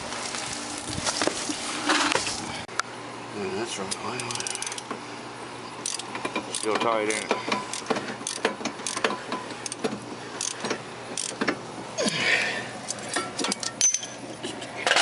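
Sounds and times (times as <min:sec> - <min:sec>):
hand tools clinking on metal: 0:12.9 - 0:15.0.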